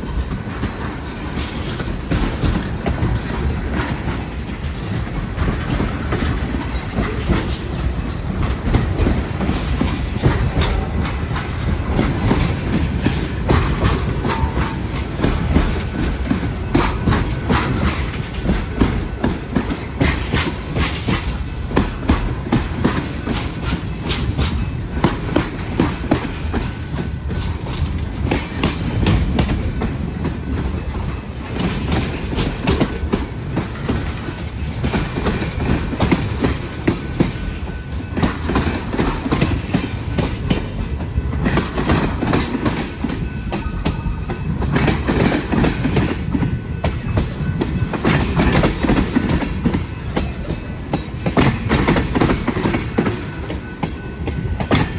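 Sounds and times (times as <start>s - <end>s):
freight train rumbling: 0.0s - 54.9s
train wheels clicking over rail joints: 0.0s - 54.9s.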